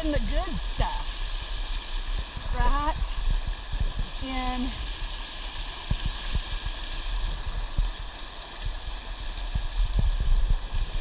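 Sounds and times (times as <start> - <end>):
shallow river gurgling: 0.0 - 11.0.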